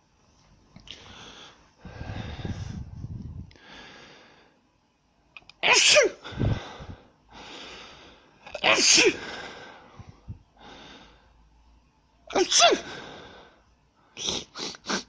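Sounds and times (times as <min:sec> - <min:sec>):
girl breathing in noisily: 0:00.9 - 0:04.6, 0:06.2 - 0:08.4, 0:09.2 - 0:11.4
girl sneezing: 0:05.6 - 0:06.2, 0:08.5 - 0:09.2, 0:12.3 - 0:12.8.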